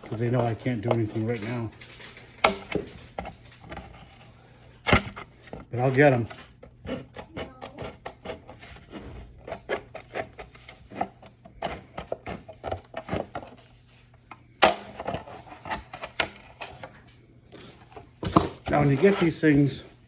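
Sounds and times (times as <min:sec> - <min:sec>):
plastic parts clicking and scraping: 0:00.0 - 0:19.7.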